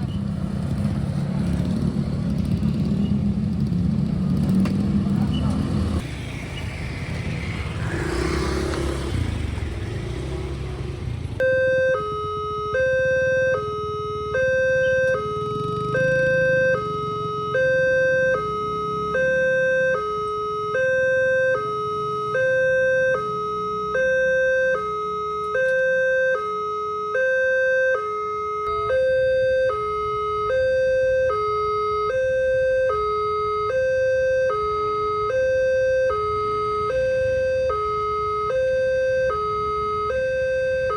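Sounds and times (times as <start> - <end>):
road traffic noise: 0.0 - 40.9
level crossing two-tone alarm: 11.4 - 40.9.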